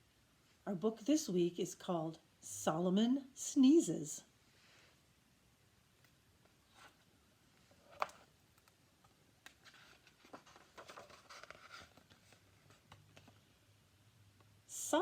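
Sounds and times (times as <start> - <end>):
book pages rustling: 6.4 - 13.5.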